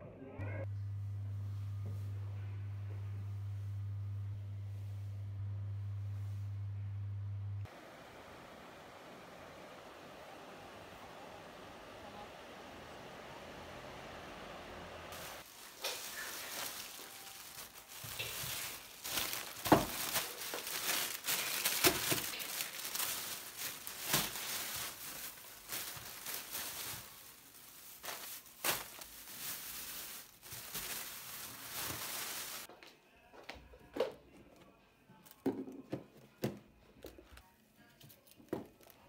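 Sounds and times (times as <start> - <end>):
packaging crinkling: 15.2 - 32.7.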